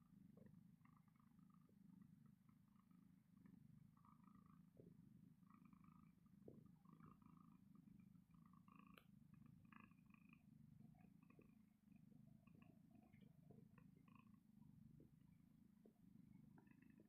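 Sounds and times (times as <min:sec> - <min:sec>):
cat purring: 0:00.0 - 0:17.0.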